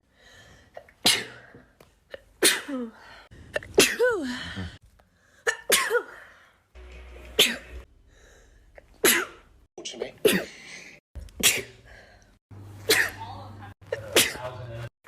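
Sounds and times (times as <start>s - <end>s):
person sneezing: 1.0s - 1.6s, 7.4s - 7.8s.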